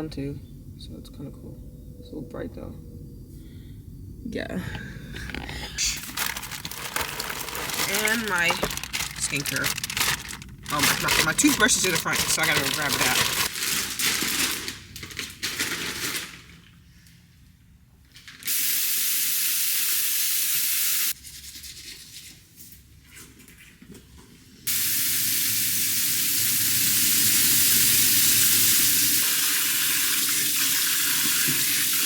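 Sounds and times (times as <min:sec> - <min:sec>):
handling noise: 0:05.2 - 0:13.6
sink tap water running: 0:06.9 - 0:13.5, 0:18.5 - 0:21.2, 0:24.7 - 0:32.0.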